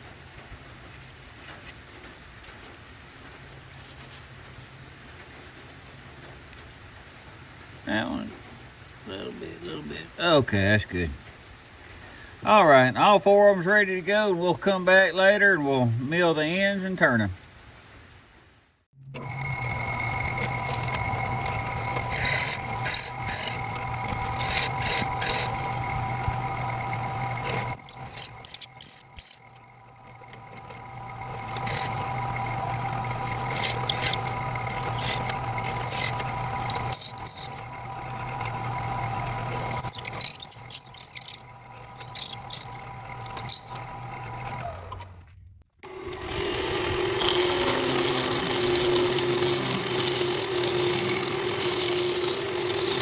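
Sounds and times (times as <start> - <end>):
steady hum: 19.1 - 44.0
power tool motor running: 19.1 - 45.1, 45.8 - 53.0
workpiece squeaking and scraping: 19.2 - 44.6, 47.2 - 53.0.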